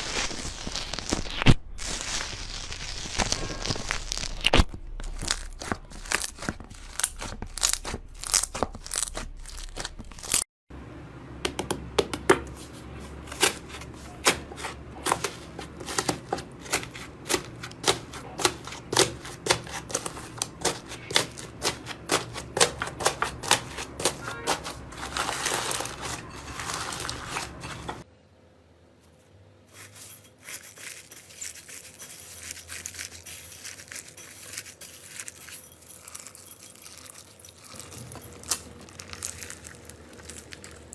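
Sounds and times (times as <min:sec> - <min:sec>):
slime crackling and popping: 0:00.0 - 0:10.4, 0:36.0 - 0:40.9.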